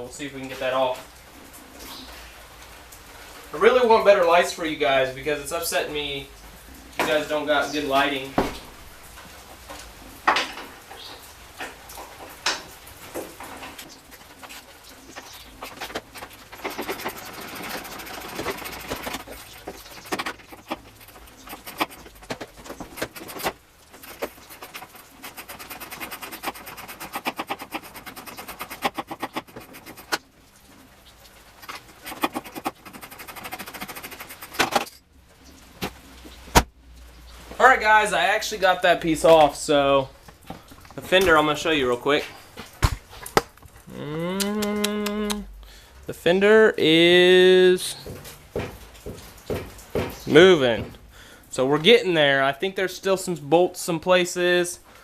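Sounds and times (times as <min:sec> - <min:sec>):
metal knocks: 0:48.0 - 0:51.0.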